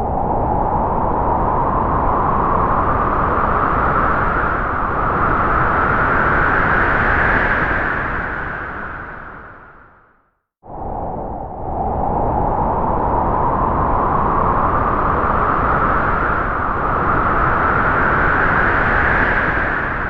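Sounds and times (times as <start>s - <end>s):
gust of wind: 10.6s - 20.0s.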